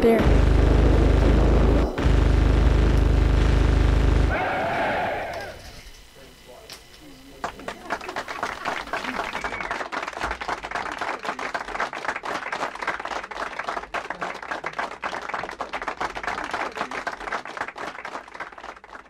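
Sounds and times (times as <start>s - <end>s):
crowd applause: 4.2s - 5.6s, 7.4s - 19.0s.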